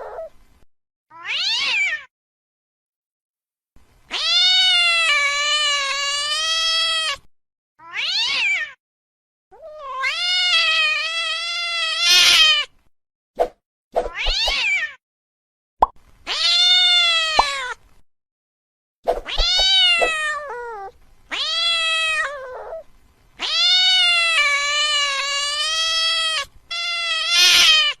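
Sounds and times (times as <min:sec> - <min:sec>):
angry cat yowling: 0:00.0 - 0:00.3, 0:01.1 - 0:02.1, 0:07.8 - 0:08.8, 0:09.6 - 0:12.7, 0:19.2 - 0:22.8, 0:23.4 - 0:28.0.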